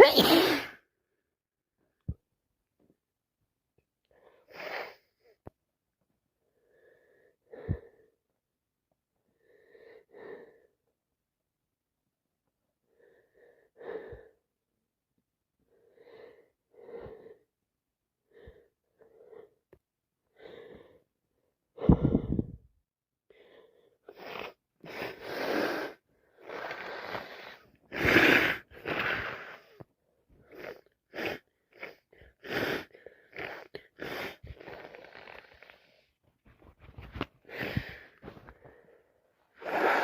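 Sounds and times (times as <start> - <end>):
person sneezing: 0.0 - 0.8.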